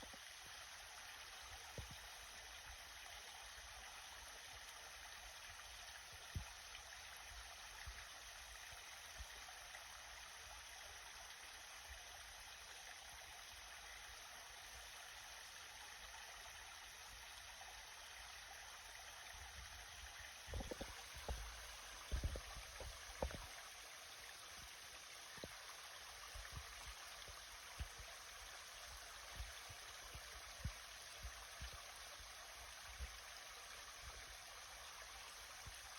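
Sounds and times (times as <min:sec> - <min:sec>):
stream water running: 0:00.0 - 0:35.9.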